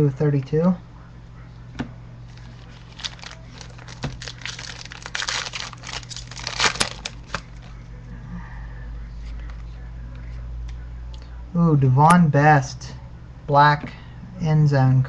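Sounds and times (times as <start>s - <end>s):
foil wrapper crinkling: 2.3s - 7.8s.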